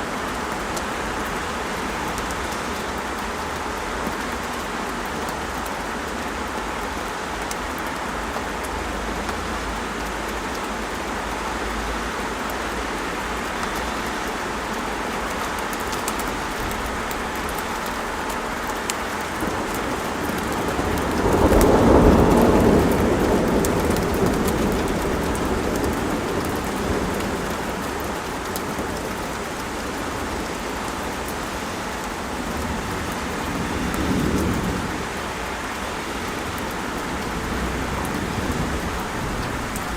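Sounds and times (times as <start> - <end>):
steady rain falling: 0.0 - 39.9
thunder rumbling: 19.2 - 29.2, 36.4 - 39.9.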